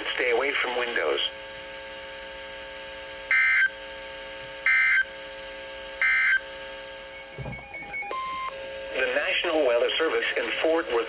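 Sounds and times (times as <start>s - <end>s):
steady electronic hum: 0.0s - 11.0s.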